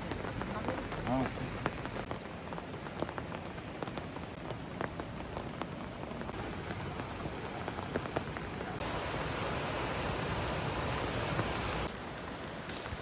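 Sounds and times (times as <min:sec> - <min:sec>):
raindrops ticking: 0:00.0 - 0:09.3
rain falling: 0:00.0 - 0:13.0.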